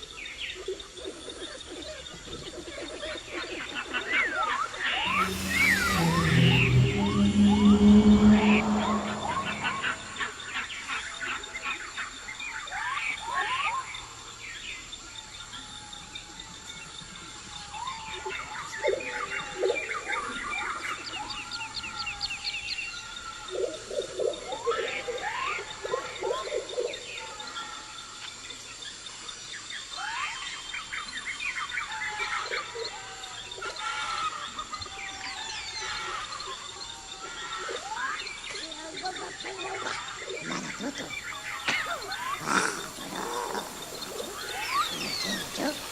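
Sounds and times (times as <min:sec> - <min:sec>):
thin steady high tone: 0:05.0 - 0:10.5
birds chirping and trilling: 0:40.6 - 0:45.9
lower bird calls: 0:40.8 - 0:45.9.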